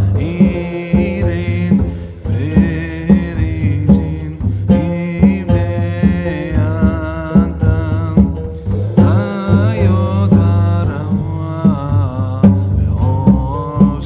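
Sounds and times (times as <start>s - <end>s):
background music with drum beat: 0.0s - 14.0s.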